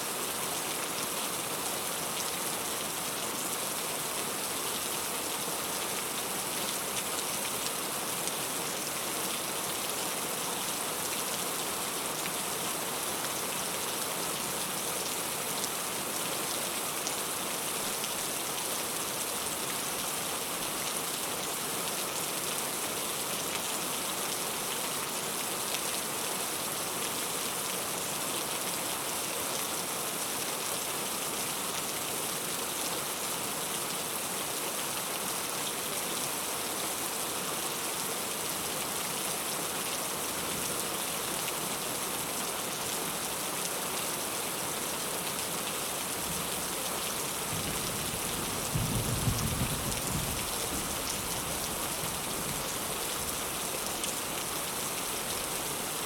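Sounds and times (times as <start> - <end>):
heavy rain falling: 35.8 - 56.0.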